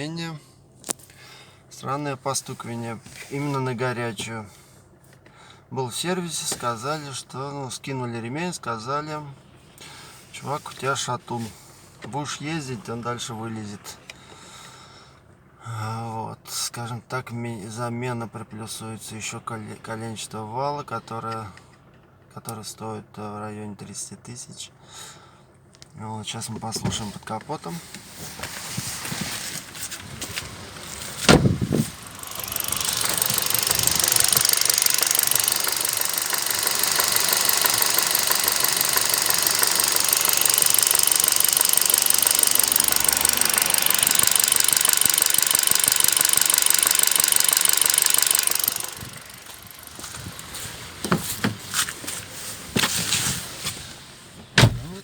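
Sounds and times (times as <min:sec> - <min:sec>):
car engine idling with knock: 0:21.6 - 0:22.3, 0:27.9 - 0:53.8
clicks: 0:29.9 - 0:52.0
thump: 0:54.6 - 0:54.9.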